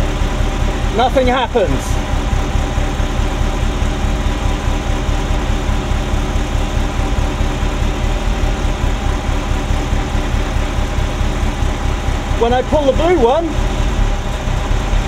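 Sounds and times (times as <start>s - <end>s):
car engine idling roughly: 0.0s - 15.0s.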